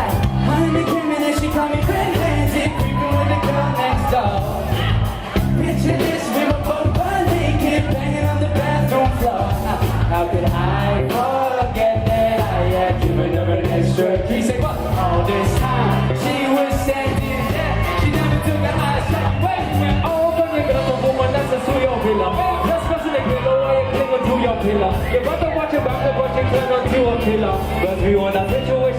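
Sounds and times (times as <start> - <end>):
live rock band playing: 0.0 - 28.9
person singing: 0.0 - 28.9.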